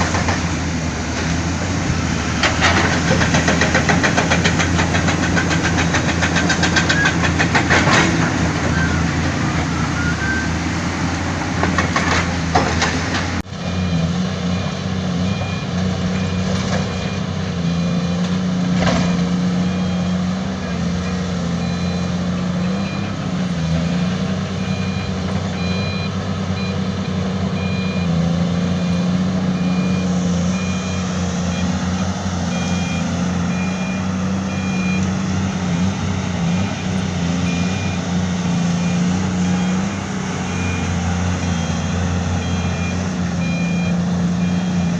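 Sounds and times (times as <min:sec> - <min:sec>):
diesel engine running: 0:00.0 - 0:44.9
reversing alarm beeping: 0:13.6 - 0:18.2, 0:18.9 - 0:44.9.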